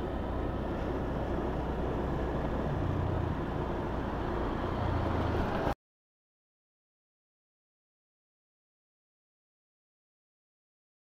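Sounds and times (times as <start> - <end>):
rumble of passing vehicles: 0.0 - 5.8.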